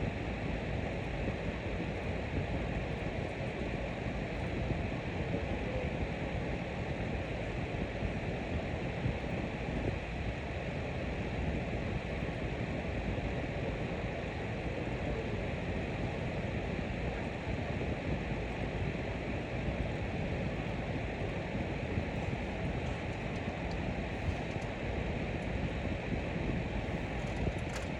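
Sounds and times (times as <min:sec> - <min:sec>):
fan running: 0:00.0 - 0:27.9.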